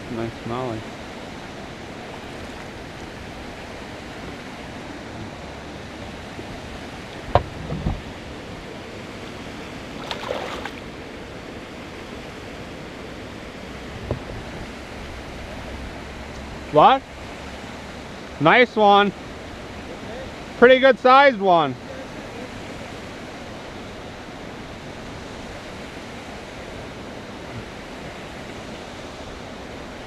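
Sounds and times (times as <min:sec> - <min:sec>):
river water rushing: 0:00.0 - 0:30.0
knocks and thumps: 0:07.3 - 0:08.0.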